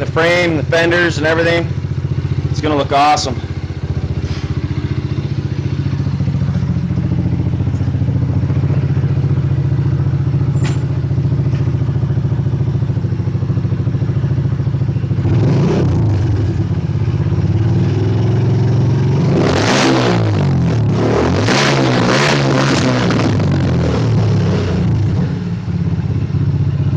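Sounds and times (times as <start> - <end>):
dirt bike engine revving: 0.0 - 7.5, 15.2 - 16.6, 19.1 - 25.4
dirt bike engine idling: 0.0 - 15.4, 16.0 - 19.2, 25.4 - 26.9.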